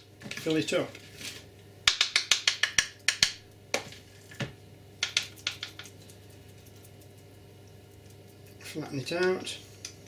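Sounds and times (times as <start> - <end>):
fork clicking and tapping: 1.9 - 3.4, 5.0 - 6.0.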